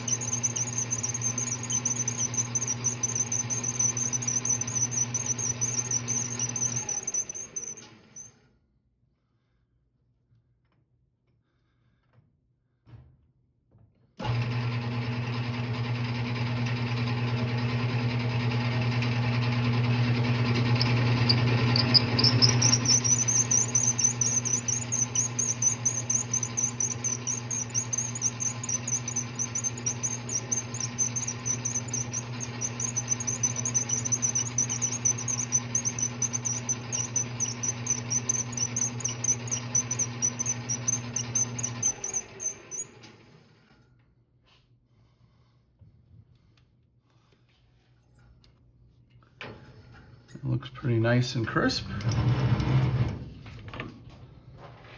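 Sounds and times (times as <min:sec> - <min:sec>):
lathe motor hum: 0:00.0 - 0:07.8, 0:14.3 - 0:42.9
high-pitched wavering squeal: 0:00.0 - 0:08.3, 0:20.8 - 0:42.9.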